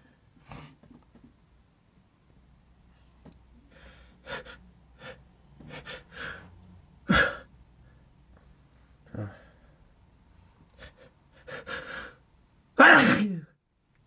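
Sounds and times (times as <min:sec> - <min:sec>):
man sneezing loudly: 0:07.1 - 0:07.5, 0:12.8 - 0:13.5
man gasping before sneeze: 0:12.8 - 0:13.5.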